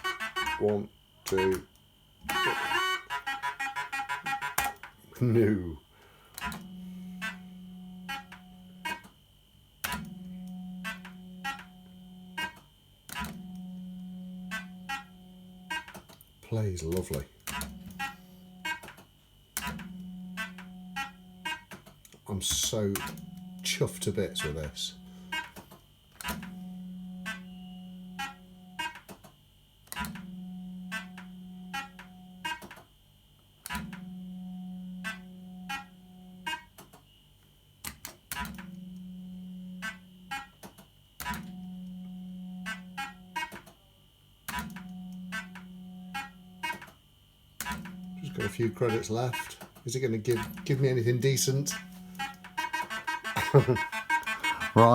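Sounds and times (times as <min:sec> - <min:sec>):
high electronic tone: 0:00.0 - 0:05.8, 0:47.8 - 0:54.9
fruit machine reels humming: 0:00.0 - 0:09.2, 0:09.8 - 0:18.9, 0:19.5 - 0:29.3, 0:47.6 - 0:54.9.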